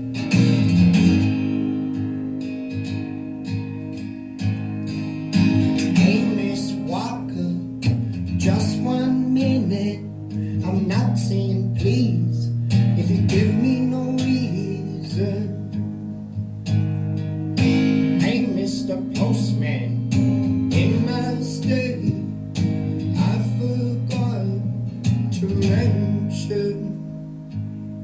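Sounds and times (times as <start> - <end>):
acoustic guitar strumming: 0.0 - 28.0
man singing: 5.8 - 15.8, 17.7 - 27.2.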